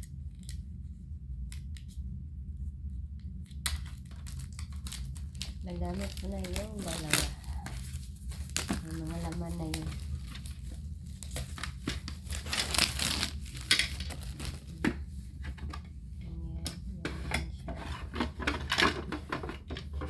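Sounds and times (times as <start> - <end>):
plastic packaging crinkling: 3.5 - 15.8
small objects set down: 9.8 - 15.0.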